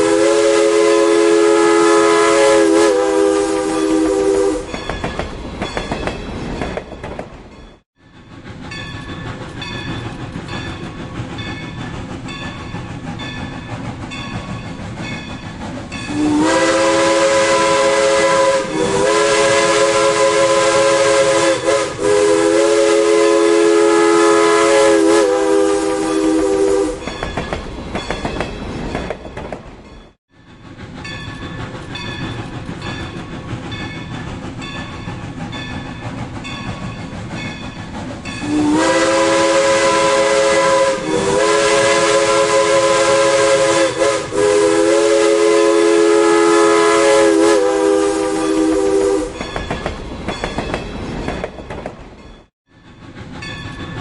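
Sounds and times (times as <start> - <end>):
steam locomotive whistle blasts: 0.0 - 4.8, 16.1 - 27.2, 38.4 - 49.5
train rumbling by: 0.0 - 54.0
train wheels clickety-clack: 4.0 - 23.3, 26.0 - 54.0.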